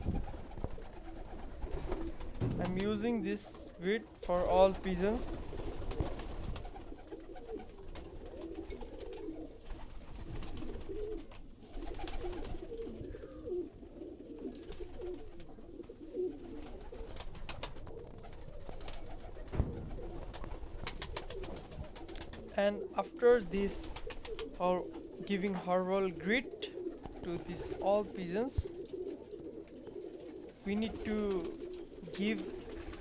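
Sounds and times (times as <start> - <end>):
wing flaps and knocks: 0.0 - 3.2, 5.4 - 12.8, 16.6 - 22.6
pigeons cooing: 0.0 - 33.0.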